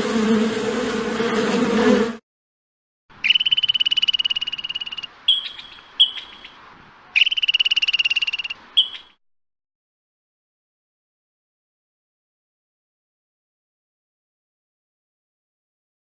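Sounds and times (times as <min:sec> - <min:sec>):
frog trilling: 0:03.2 - 0:06.5, 0:07.2 - 0:09.2
frog chirps: 0:03.2 - 0:06.6, 0:07.2 - 0:09.2.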